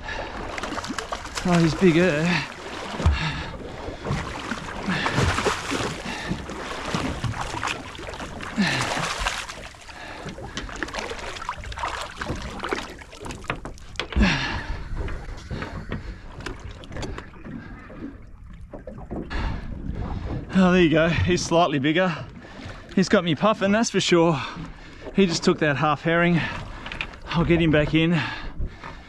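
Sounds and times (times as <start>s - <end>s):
water slapping boat hull: 0.0s - 29.0s
person breathing heavily: 2.2s - 4.2s, 4.8s - 6.5s, 8.6s - 10.6s, 14.2s - 16.4s.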